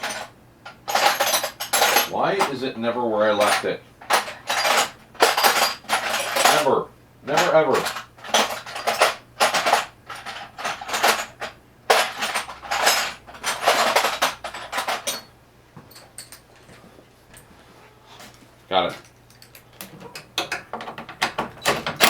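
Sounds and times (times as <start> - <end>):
metal hand tools clattering: 0.0 - 2.7, 3.3 - 6.7, 7.3 - 15.3.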